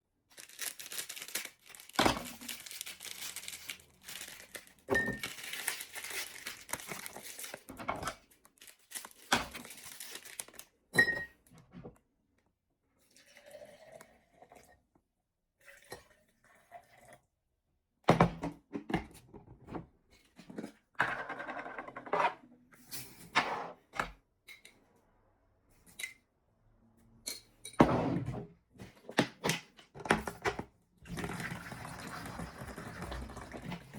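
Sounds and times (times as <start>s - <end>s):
crinkling and tearing rustles: 0.3s - 7.8s, 8.4s - 10.7s.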